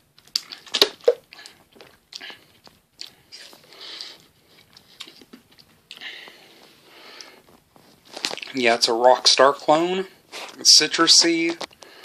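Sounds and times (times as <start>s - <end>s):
mouth and lip clicks: 0.2s - 6.1s.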